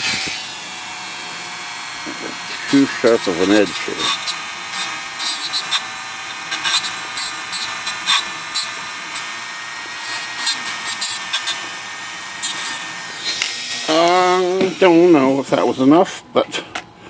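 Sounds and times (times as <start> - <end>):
scratchy grinding bursts: 0.0 - 16.2
rotary tool high whine: 0.0 - 17.0.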